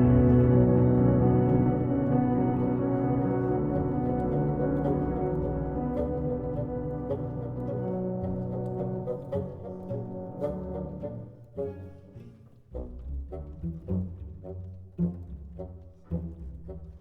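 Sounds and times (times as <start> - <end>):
plucked bass notes: 0.0 - 6.5
low bowed strings: 0.0 - 17.0.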